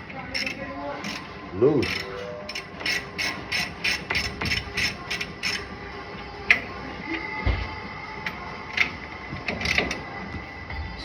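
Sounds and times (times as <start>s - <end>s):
hand ratchet clicking: 1.8s - 5.6s.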